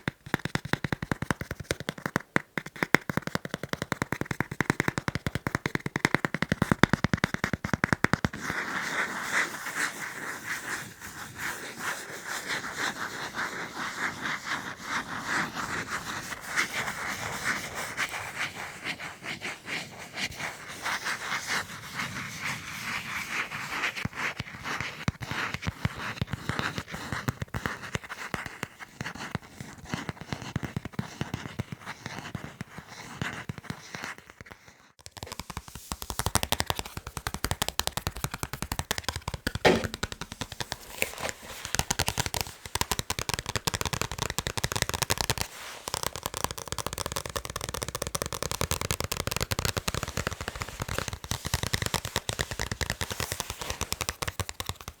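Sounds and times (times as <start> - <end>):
fast tapping by hand: 0.0 - 8.4, 35.0 - 55.0.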